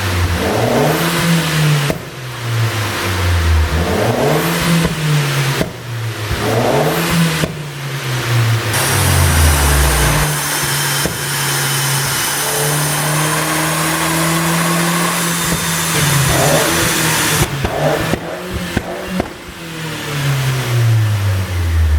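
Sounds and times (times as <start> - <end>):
car engine revving: 0.0 - 21.9
exhaust pops and crackles: 4.6 - 6.5, 15.4 - 19.7.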